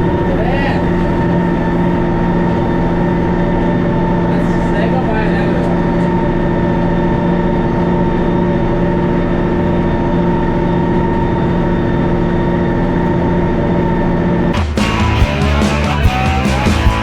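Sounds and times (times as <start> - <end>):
tractor diesel engine running: 0.0 - 17.0
music: 14.5 - 17.0.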